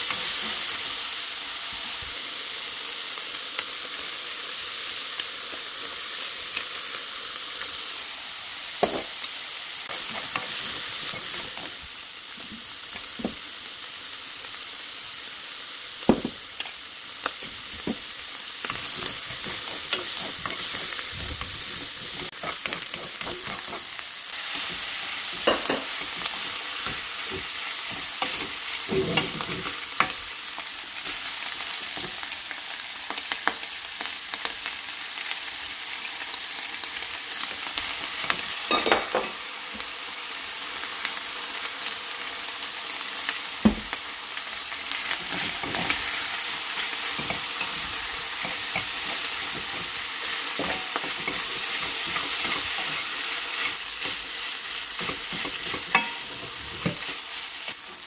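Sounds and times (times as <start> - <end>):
food sizzling in frying pan: 0.0 - 58.0
spatula scraping and knocking pan: 18.7 - 23.9.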